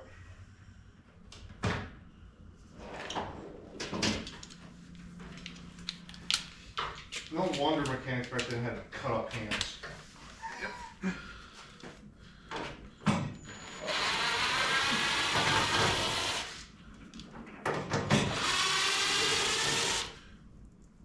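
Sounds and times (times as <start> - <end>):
cordless screw gun running: 13.8 - 16.6, 18.2 - 20.2.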